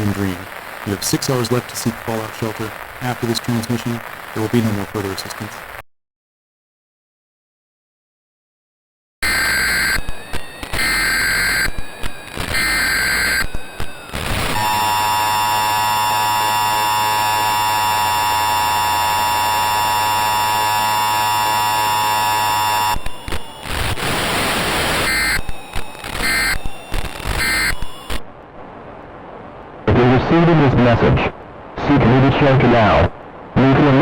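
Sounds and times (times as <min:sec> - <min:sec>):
static-like noise: 0:00.0 - 0:05.8, 0:09.2 - 0:34.0
digital data tone bursts: 0:09.2 - 0:28.2
steady attention tone: 0:09.2 - 0:28.3.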